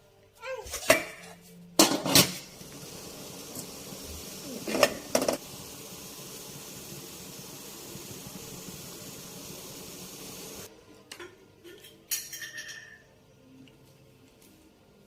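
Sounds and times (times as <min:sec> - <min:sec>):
kitchenware clinking: 0:00.7 - 0:02.5, 0:04.5 - 0:05.4, 0:11.2 - 0:13.2
steady hiss: 0:02.5 - 0:10.7.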